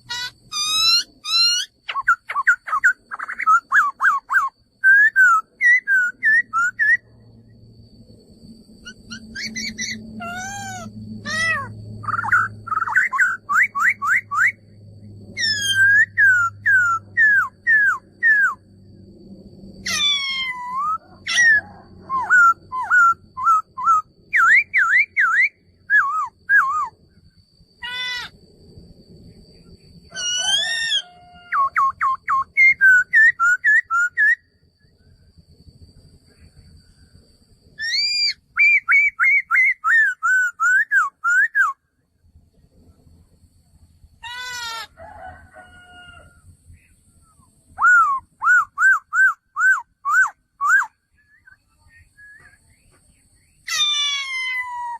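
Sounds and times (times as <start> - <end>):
laughingthrush whistled song: 0.0 - 7.2, 8.8 - 14.7, 15.3 - 18.7, 19.8 - 27.2, 30.0 - 34.6, 37.7 - 41.8, 46.8 - 52.9.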